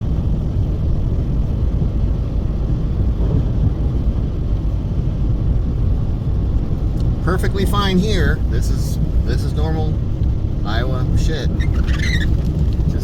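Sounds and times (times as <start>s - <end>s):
loud low rumbling: 0.0s - 13.0s.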